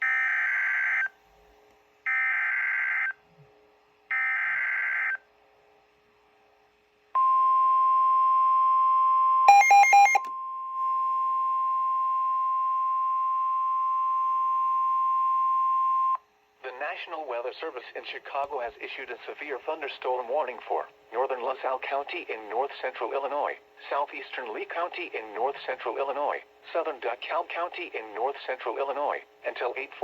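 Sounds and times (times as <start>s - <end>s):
steady warning alert tone: 9.5s - 10.2s.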